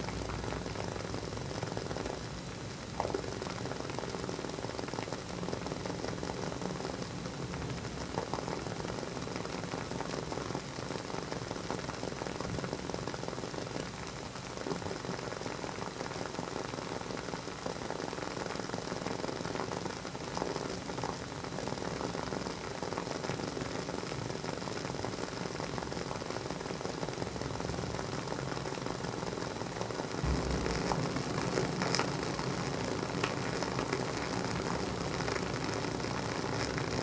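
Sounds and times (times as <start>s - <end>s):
candle wick crackling: 30.2s - 37.0s.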